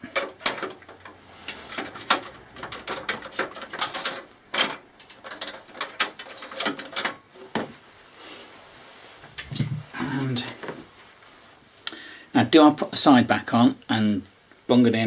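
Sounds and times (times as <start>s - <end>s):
computer case parts clicking: 0.0s - 7.6s.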